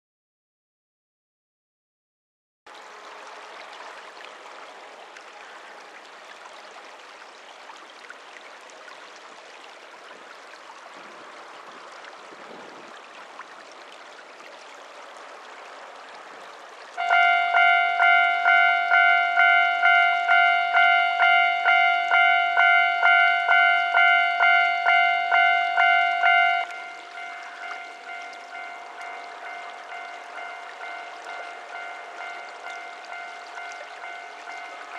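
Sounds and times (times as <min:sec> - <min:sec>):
level-crossing warning bell ringing: 0:17.0 - 0:34.9.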